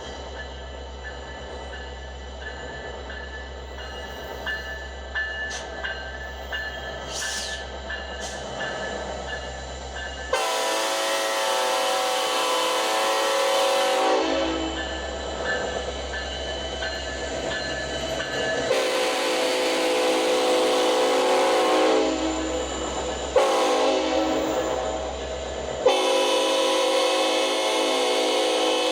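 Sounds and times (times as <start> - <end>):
locomotive bell ringing: 0.0 - 11.8, 12.4 - 25.9
diesel locomotive engine hum: 0.0 - 28.9
train air horn blast: 10.3 - 14.7, 18.7 - 22.5, 23.4 - 25.1, 25.8 - 28.9.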